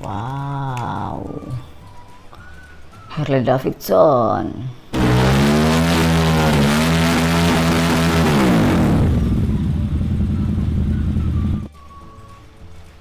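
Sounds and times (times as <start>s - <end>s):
motorcycle engine revving and idling: 5.0s - 11.7s.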